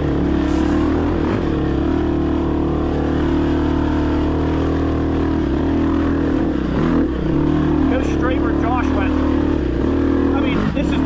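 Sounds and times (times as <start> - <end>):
dirt bike engine idling: 0.0 - 1.6.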